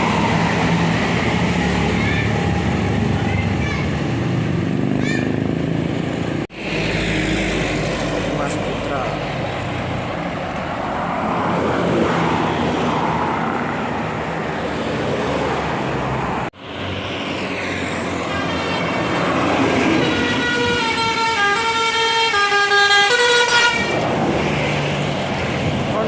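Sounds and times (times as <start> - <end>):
bus musical horn melody: 19.8 - 24.0.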